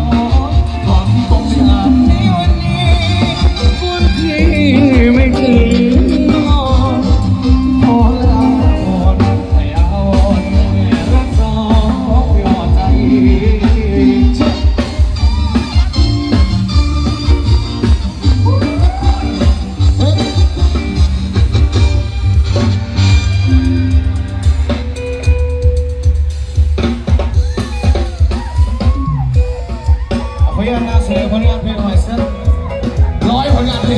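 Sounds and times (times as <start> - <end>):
person singing: 0.0 - 15.7
drum kit with heavy bass beat: 0.0 - 33.9.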